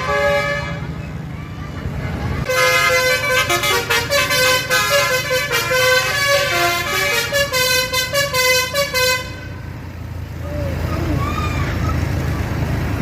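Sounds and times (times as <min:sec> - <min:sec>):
bus horn playing melody: 0:00.0 - 0:00.9, 0:02.4 - 0:09.7.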